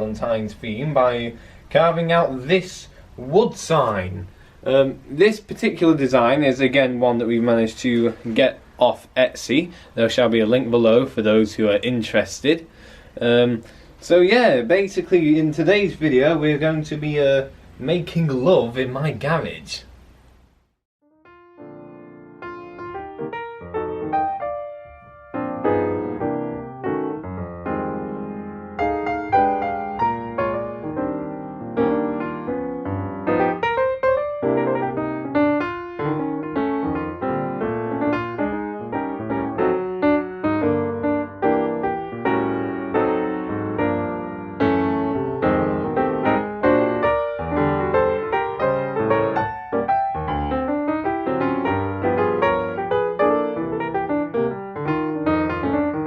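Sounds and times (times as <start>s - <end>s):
gentle piano music: 0.0s - 8.9s, 21.0s - 56.0s.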